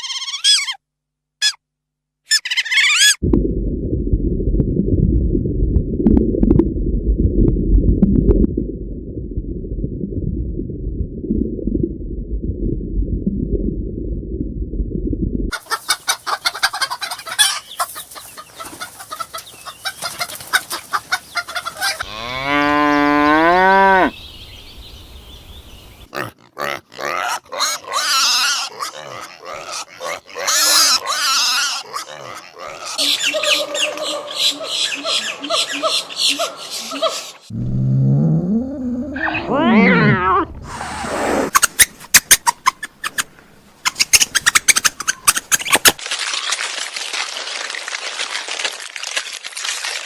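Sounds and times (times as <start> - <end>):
fowl clucking and chattering: 15.5 - 22.0, 33.0 - 37.4
cow mooing: 22.0 - 24.1.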